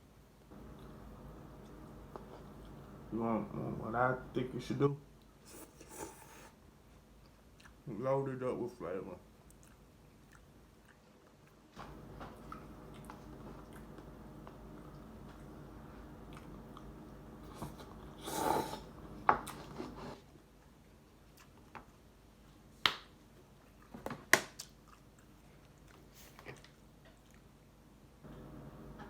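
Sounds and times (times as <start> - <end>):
man chewing noodles: 0.6 - 3.0, 5.2 - 7.8, 9.4 - 22.1, 24.6 - 27.7.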